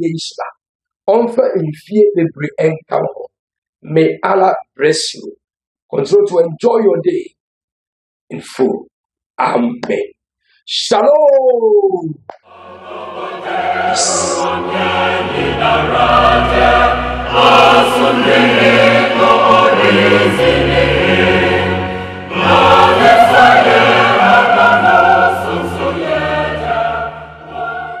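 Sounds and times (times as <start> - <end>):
choir singing chords: 12.4 - 28.0.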